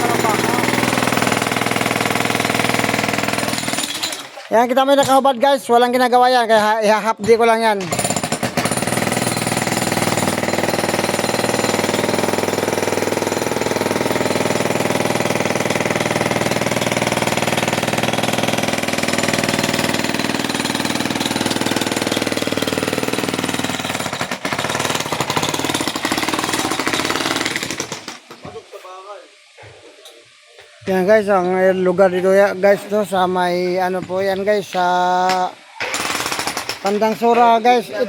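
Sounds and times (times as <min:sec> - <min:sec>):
jackhammer hammering: 0:00.0 - 0:04.4, 0:07.8 - 0:28.4, 0:33.9 - 0:37.2.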